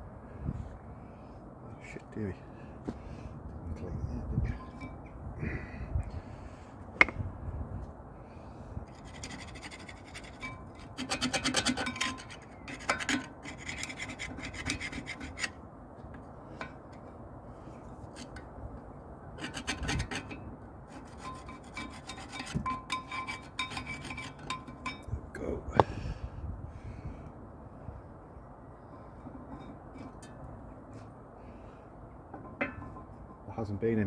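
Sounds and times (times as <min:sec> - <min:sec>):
brush scrubbing metal: 0:09.0 - 0:15.6, 0:19.4 - 0:25.0.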